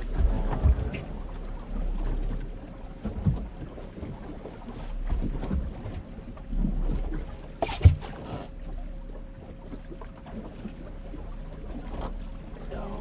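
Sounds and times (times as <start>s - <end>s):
wind buffeting microphone: 0.0s - 7.2s
rough water against boat: 0.0s - 13.0s.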